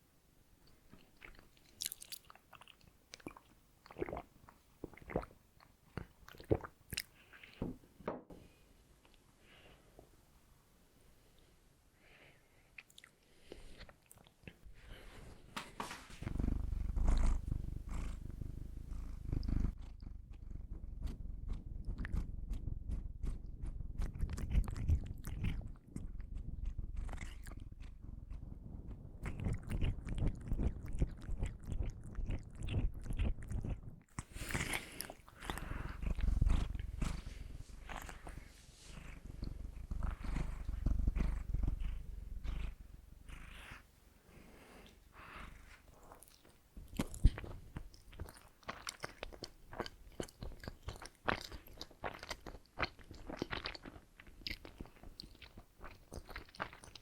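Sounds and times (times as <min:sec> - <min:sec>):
low dense rumble: 0:35.4 - 0:43.3
chewing and biting donuts: 0:47.0 - 0:57.0.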